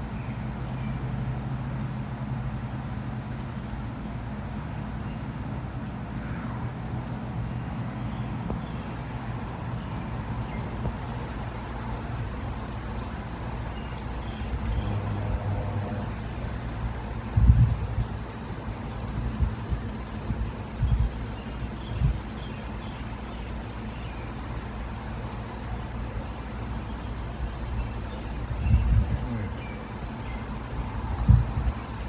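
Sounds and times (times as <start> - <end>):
motor vehicle running: 7.5 - 18.2.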